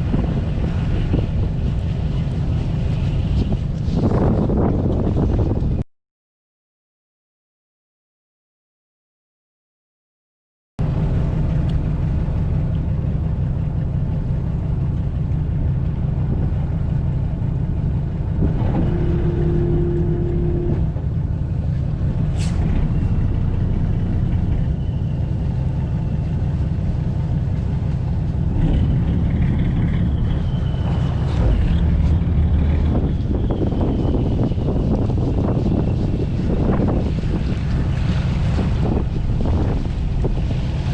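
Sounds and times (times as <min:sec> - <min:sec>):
boat engine droning: 0:00.0 - 0:05.8, 0:10.8 - 0:40.9
short steady higher tone: 0:18.8 - 0:20.9.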